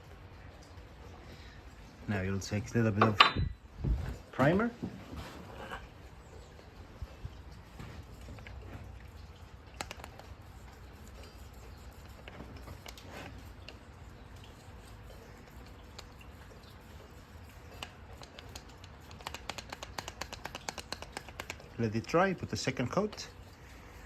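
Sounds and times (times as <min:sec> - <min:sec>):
small ticks: 0:09.7 - 0:21.7
paintbrush scratching on wood: 0:09.8 - 0:24.0.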